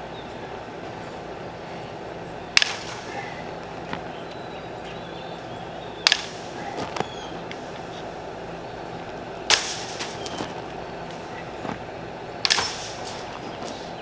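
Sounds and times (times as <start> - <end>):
bundle ties snapping when cut: 6.0 - 8.1.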